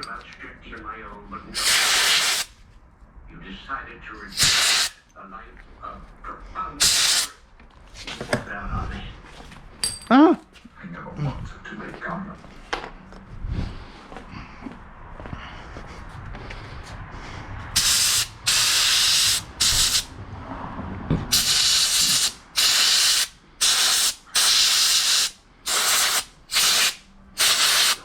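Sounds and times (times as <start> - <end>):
sandblaster air hiss bursts: 1.6 - 2.5, 4.4 - 5.0, 6.8 - 7.3, 17.8 - 20.1, 21.3 - 28.0.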